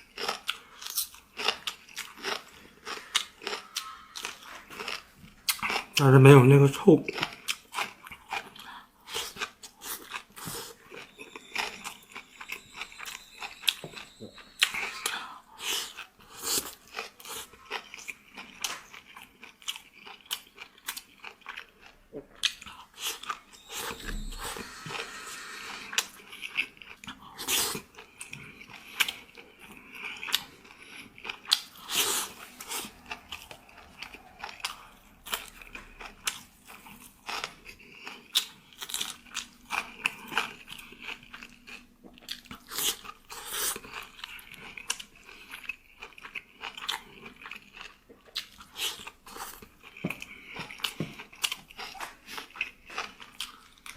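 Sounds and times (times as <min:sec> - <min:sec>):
chewing crisp food: 0:00.0 - 0:53.9
mouth sounds: 0:23.5 - 0:26.2.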